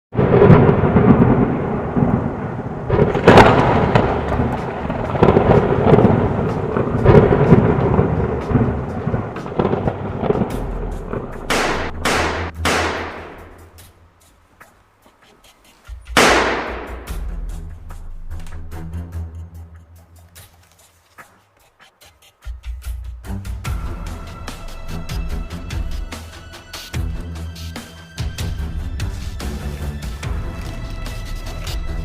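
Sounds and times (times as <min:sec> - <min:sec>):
thunder-like rumbling: 0:00.1 - 0:13.8.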